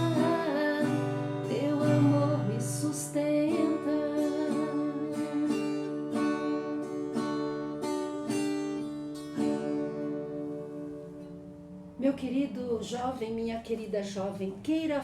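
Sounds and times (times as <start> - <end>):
acoustic guitar chords ringing: 0.0 - 13.2.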